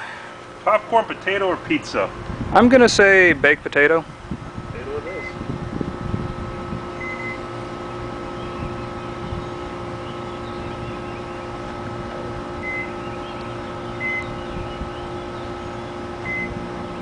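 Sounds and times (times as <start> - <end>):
microwave oven humming: 0.0 - 17.0
short high beeps: 5.1 - 5.4, 7.0 - 7.4.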